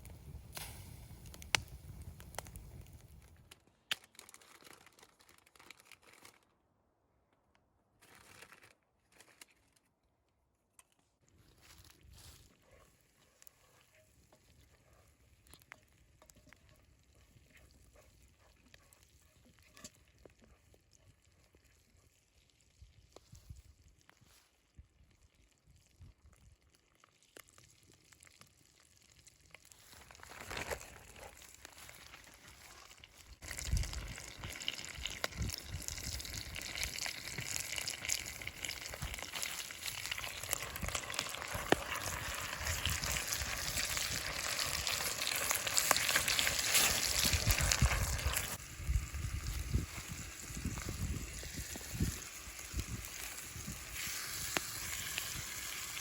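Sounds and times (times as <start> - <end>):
food sizzling in a pan: 33.5 - 56.0.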